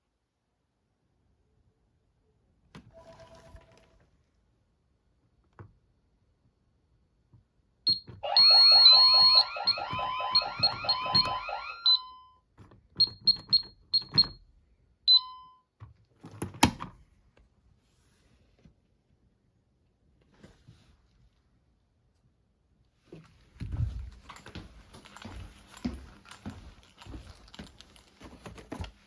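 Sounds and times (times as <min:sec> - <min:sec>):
high key-press beeps: 0:07.9 - 0:12.2
fast warbling alarm tone: 0:08.2 - 0:12.2.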